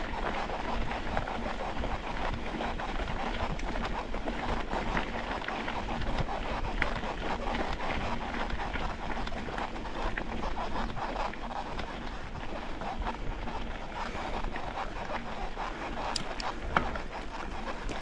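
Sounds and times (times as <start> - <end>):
wind buffeting microphone: 0.0 - 18.0
bike rattling: 12.2 - 18.0
tyres crackling over stones: 15.9 - 18.0.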